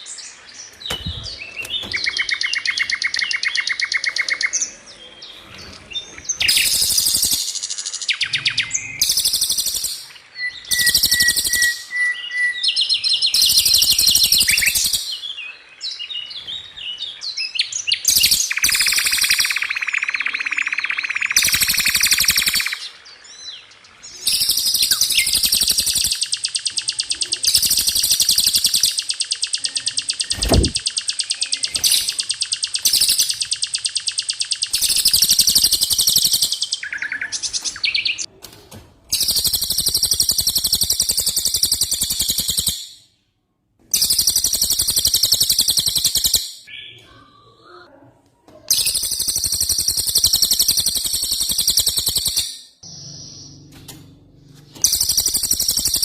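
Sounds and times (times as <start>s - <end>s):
songbird rapid high trills: 24.8s - 36.7s.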